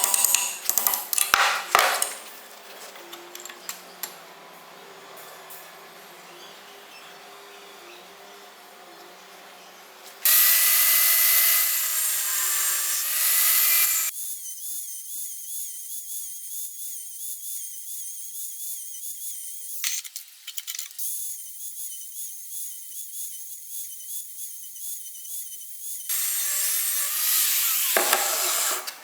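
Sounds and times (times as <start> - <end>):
power tool working metal: 9.7 - 14.6, 26.1 - 29.0.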